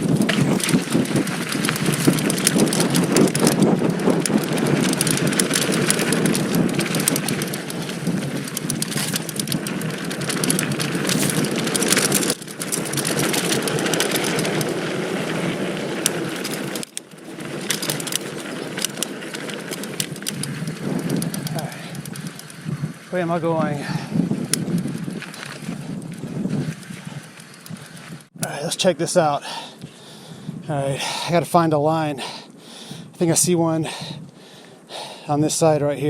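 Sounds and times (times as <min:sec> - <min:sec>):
bike clicks and knocks: 0:00.0 - 0:22.8, 0:23.9 - 0:28.6
bike tyres grinding over dirt: 0:00.0 - 0:30.2.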